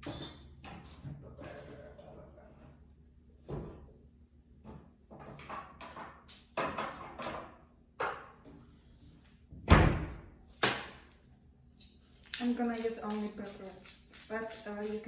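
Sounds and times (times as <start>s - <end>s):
kitchen knocks and clatters: 0.0s - 2.8s, 4.6s - 8.7s.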